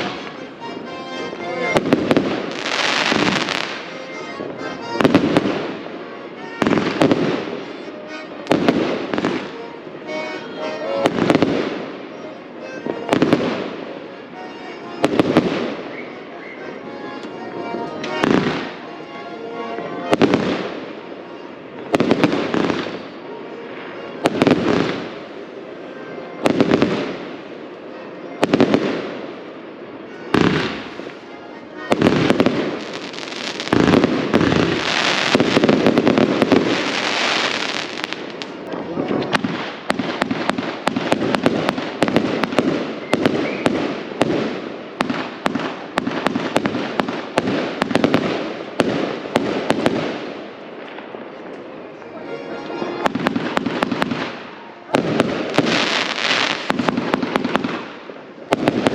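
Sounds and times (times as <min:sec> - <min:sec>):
fireworks banging and crackling: 0:00.0 - 0:18.8, 0:20.0 - 0:25.5, 0:26.4 - 0:27.7, 0:28.4 - 0:58.9.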